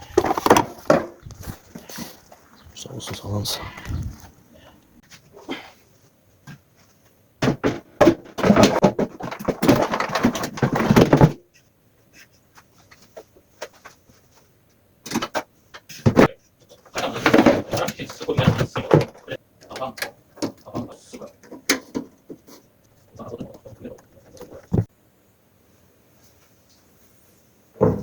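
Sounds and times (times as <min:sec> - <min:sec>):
machine parts knocking and clattering: 0:07.4 - 0:11.4.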